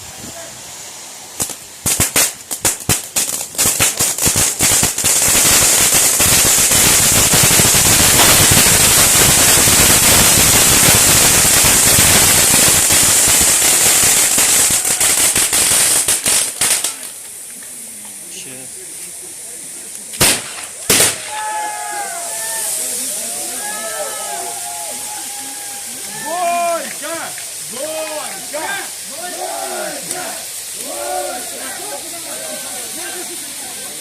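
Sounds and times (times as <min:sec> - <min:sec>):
firecrackers crackling and popping: 0:00.0 - 0:34.0
sharp hiss: 0:00.0 - 0:34.0.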